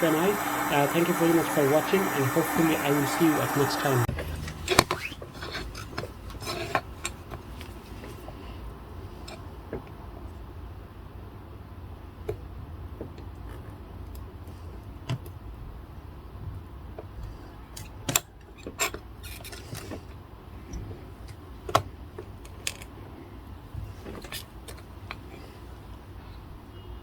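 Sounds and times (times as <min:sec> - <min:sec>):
low steady hum: 0:00.0 - 0:04.5.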